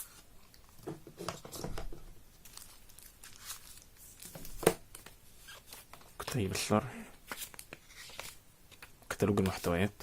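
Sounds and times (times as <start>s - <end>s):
paper and packaging rustling: 0.0s - 6.4s.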